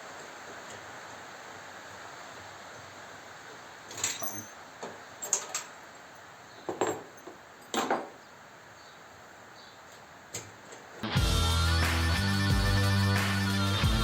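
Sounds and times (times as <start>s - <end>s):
metallic clinks and knocks: 3.9s - 4.6s, 5.2s - 5.8s, 6.7s - 8.2s.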